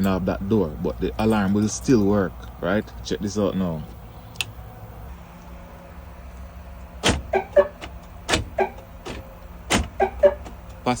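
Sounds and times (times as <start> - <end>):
door lock actuators clunking: 7.0 - 10.8.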